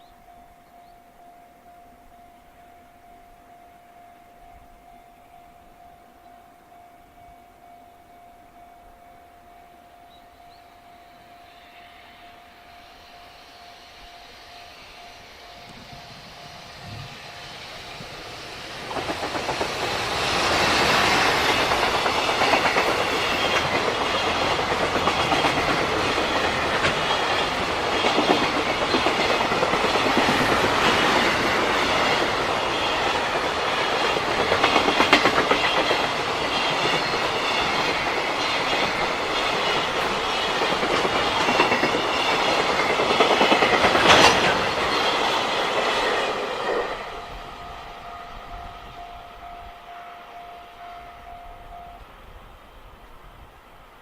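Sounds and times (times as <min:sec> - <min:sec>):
train wheels clickety-clack: 0:15.1 - 0:47.6.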